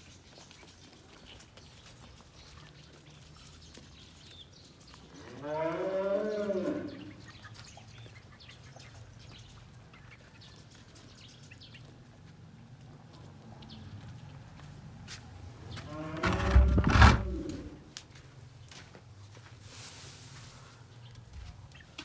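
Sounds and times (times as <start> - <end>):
farm animal calling: 15.7 - 17.8.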